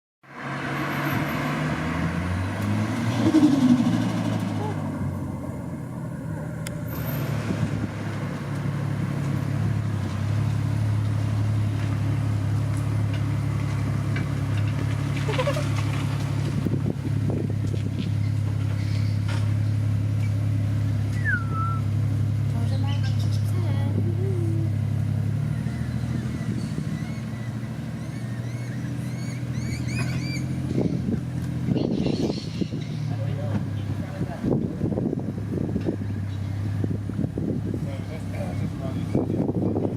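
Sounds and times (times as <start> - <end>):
car engine running at low revs: 1.3 - 39.9
birds chirping: 21.1 - 21.9, 22.6 - 23.8, 25.5 - 34.0.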